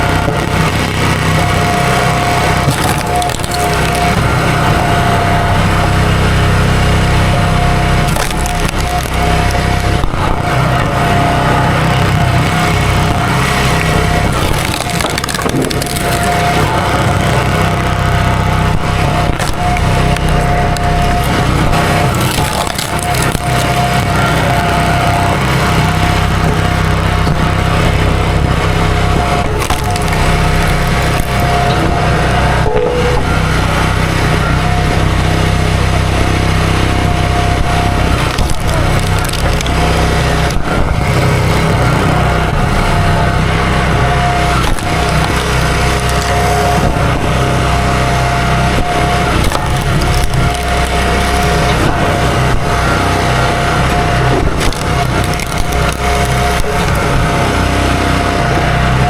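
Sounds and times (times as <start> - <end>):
small gasoline engine running: 0.0 - 59.0
wood cracking and splintering: 0.0 - 59.0.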